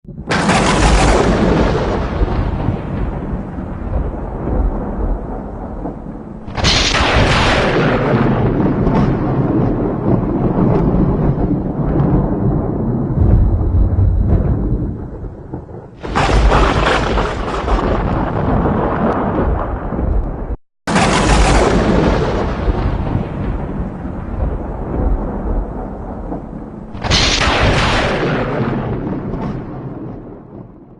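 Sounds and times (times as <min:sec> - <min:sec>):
sharp thunderclap: 0:00.1 - 0:30.9
thunder rumbling: 0:00.1 - 0:30.9.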